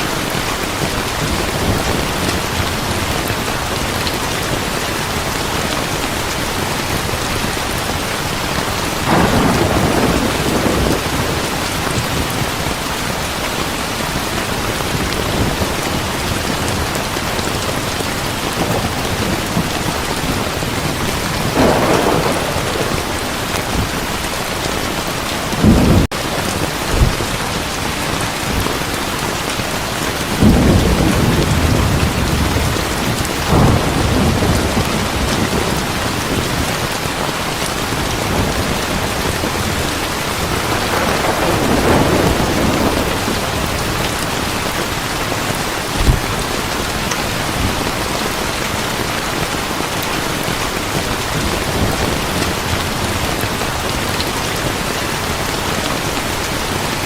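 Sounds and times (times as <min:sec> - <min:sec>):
thunder rumbling: 0:00.0 - 0:28.8, 0:30.1 - 0:48.3
heavy rain falling: 0:00.0 - 0:57.0.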